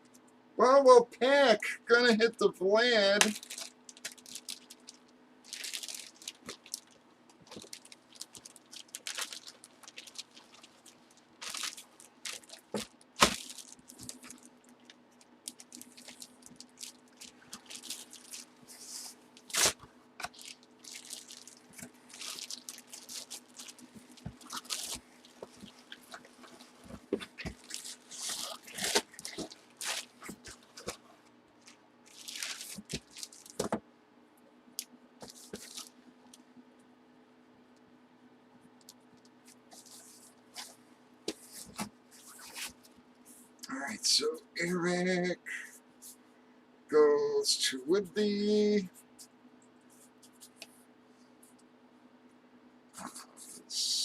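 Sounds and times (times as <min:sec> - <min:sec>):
faint steady hum: 0:00.0 - 0:54.0
plastic packaging crinkling: 0:03.2 - 0:33.8, 0:35.2 - 0:36.0.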